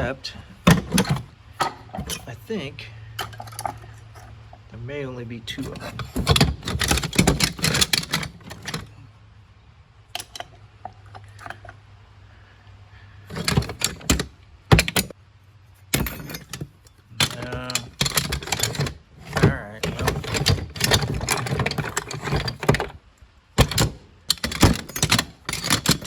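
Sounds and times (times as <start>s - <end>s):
metal hardware clattering: 0.6s - 2.4s, 3.2s - 4.6s, 5.4s - 9.0s, 10.2s - 11.8s, 13.3s - 15.2s, 15.8s - 26.0s.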